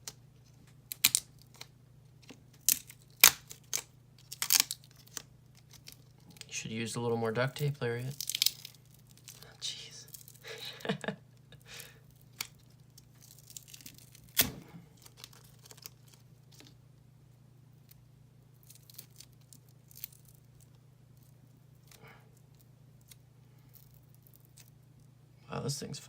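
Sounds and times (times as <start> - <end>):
duct tape peeling and tearing: 0.0 - 6.5, 8.0 - 10.5, 12.1 - 16.7, 18.6 - 20.8
steady low hum: 0.0 - 26.0.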